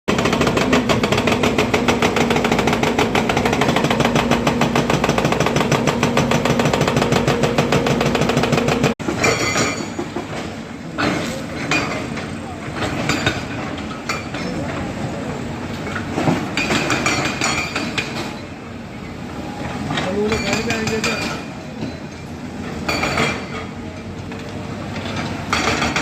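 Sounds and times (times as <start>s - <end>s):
hydraulic breaker hammer pounding: 0.1s - 10.4s, 25.5s - 26.0s
excavator engine drone: 0.1s - 11.0s.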